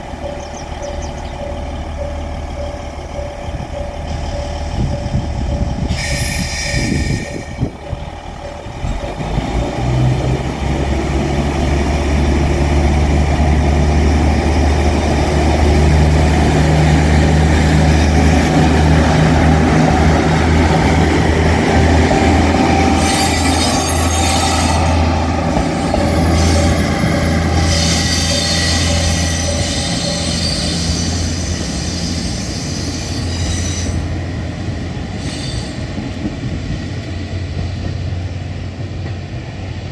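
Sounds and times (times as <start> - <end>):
train engine droning: 0.0 - 39.9
high-pitched wheel squeal: 3.8 - 7.8, 22.6 - 34.1.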